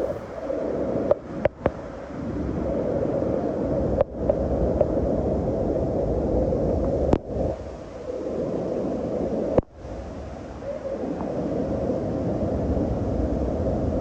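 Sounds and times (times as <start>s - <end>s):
wind buffeting microphone: 0.0s - 0.6s.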